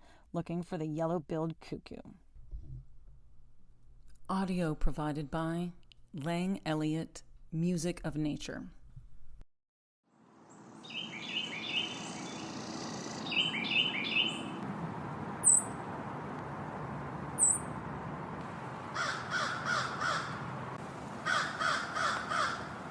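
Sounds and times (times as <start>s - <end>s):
small birds chirping: 10.5s - 17.8s.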